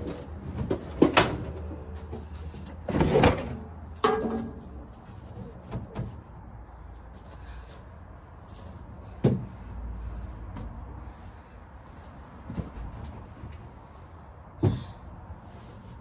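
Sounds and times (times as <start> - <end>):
knocks and clunks of metal equipment: 0.0 - 6.3.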